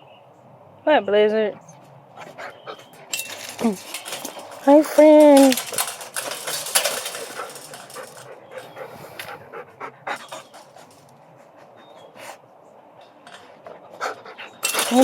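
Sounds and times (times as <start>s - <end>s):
dog panting: 2.2s - 3.0s, 8.3s - 12.4s.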